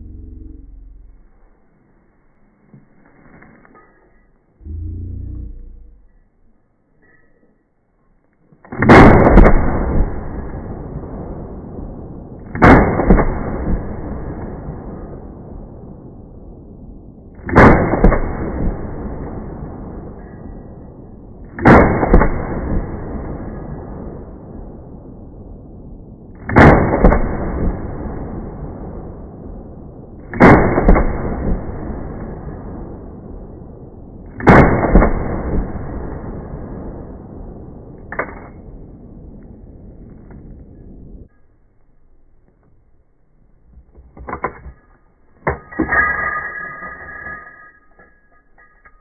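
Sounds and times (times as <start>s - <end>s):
rifle shots with echo: 8.6s - 40.1s
sharp short crack: 38.0s - 38.6s.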